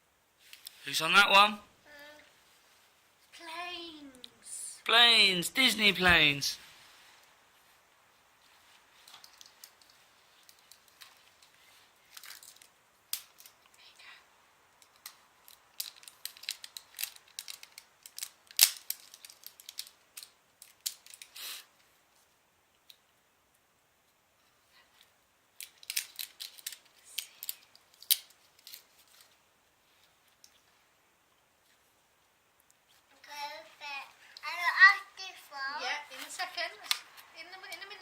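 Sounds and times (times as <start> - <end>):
loud foil crack: 12.1 - 13.6, 14.8 - 21.7, 25.6 - 29.3
foil wrapper crinkling and tearing: 15.4 - 21.4, 25.6 - 29.3.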